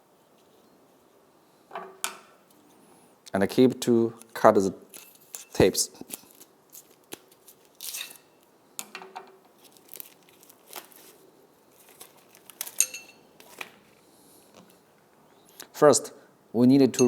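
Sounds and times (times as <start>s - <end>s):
tape ripping: 4.9s - 8.3s, 9.6s - 12.8s.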